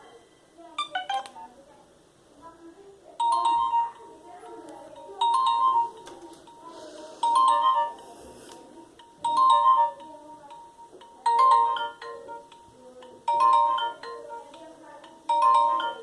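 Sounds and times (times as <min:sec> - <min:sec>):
mobile phone ringtone beeping: 0:00.0 - 0:01.3, 0:03.2 - 0:04.3, 0:04.9 - 0:16.0.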